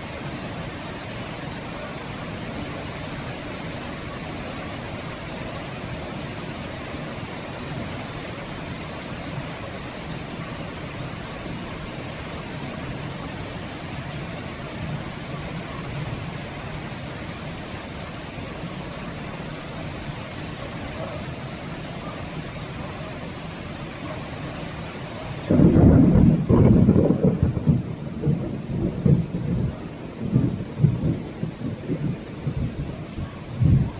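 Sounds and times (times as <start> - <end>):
heavy rain: 0.0 - 33.9
thunder rumbling: 25.4 - 33.9
loud thunderclap: 25.5 - 33.9.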